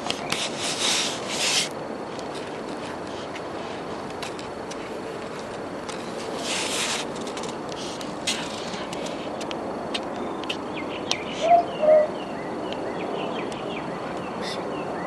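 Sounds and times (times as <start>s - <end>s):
background hiss: 0.0s - 14.7s
thin insect-like whine: 0.0s - 15.0s
faint high chirps and clicks: 10.0s - 11.6s.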